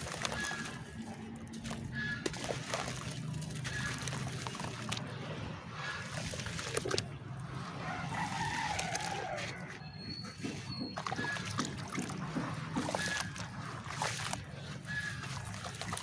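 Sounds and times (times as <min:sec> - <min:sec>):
clay crumbling fizzing in water: 0:00.0 - 0:05.2
light water sloshing: 0:00.0 - 0:16.0.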